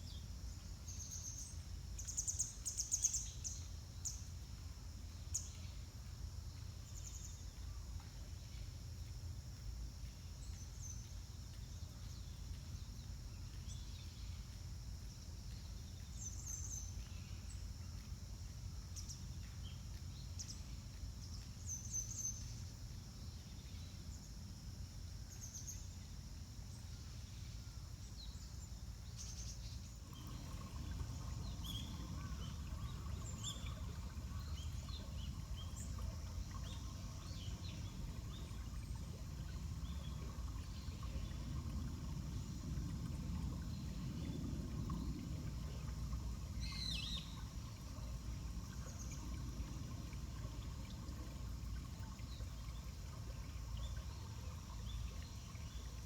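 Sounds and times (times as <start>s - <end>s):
high insect-like hiss: 0.0s - 56.0s
steady low rumble: 29.9s - 56.0s.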